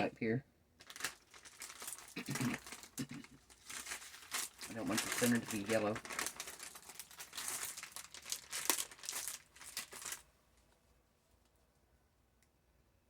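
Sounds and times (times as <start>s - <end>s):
baby wipe crinkling and rustling: 0.8s - 10.3s.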